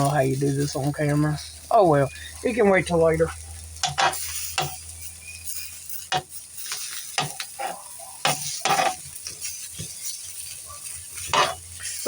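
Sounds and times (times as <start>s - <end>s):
food sizzling in a pan: 0.0s - 12.0s
utensil scraping a pan: 3.8s - 10.3s, 11.2s - 12.0s.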